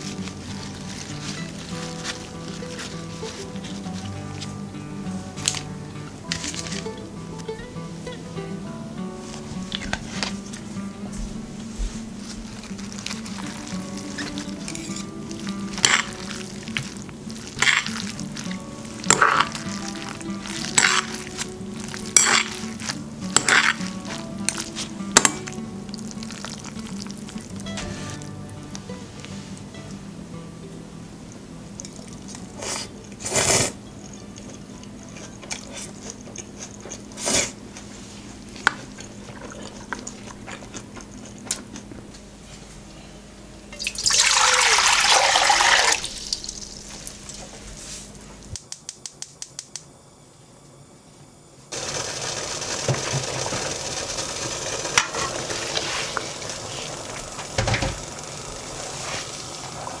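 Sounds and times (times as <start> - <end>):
running water rushing: 8.9 - 29.6, 43.8 - 47.5, 51.7 - 60.0
utensils clicking and knocking: 51.7 - 60.0.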